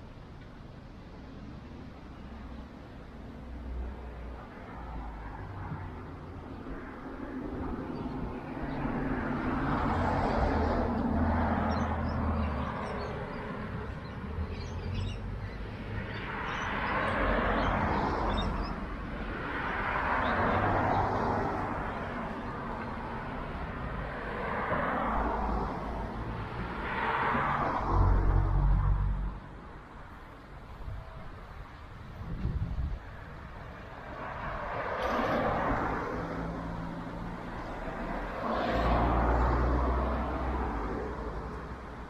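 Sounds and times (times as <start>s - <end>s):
wind rumble on microphone: 30.6s - 35.9s.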